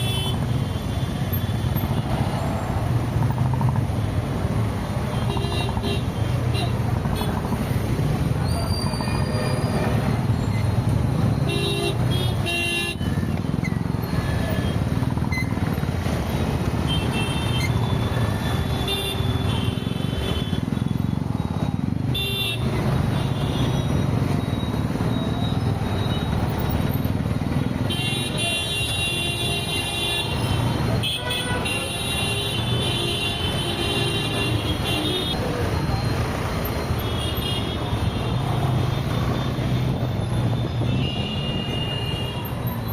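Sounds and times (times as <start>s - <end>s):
road traffic rumble: 0.0s - 42.9s
vehicle horns honking: 27.9s - 35.4s.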